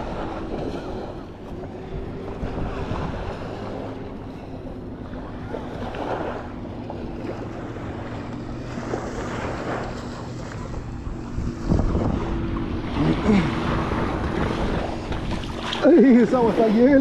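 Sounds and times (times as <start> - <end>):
water sloshing: 0.0 - 17.0
wind buffeting microphone: 0.0 - 17.0
low thump or splash: 11.5 - 15.9.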